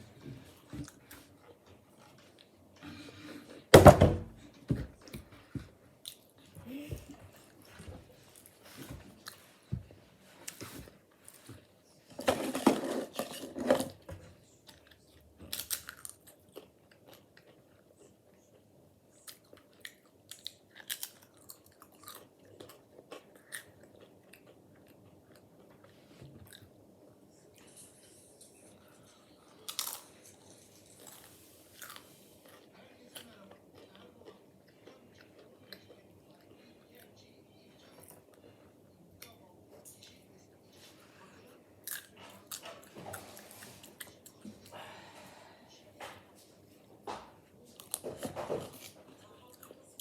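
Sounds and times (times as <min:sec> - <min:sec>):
person crunching potato chips: 0:29.6 - 0:30.1.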